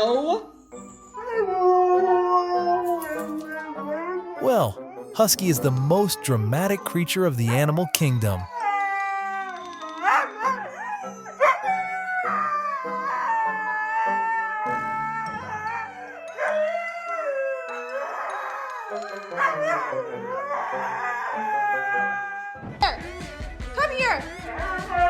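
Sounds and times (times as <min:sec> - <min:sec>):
background music: 0:00.0 - 0:25.0
husky howling: 0:08.6 - 0:22.6.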